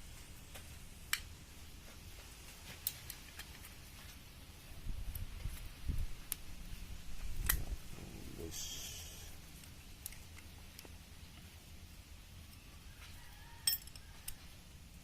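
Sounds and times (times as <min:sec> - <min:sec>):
brief hiss: 0:08.5 - 0:09.4.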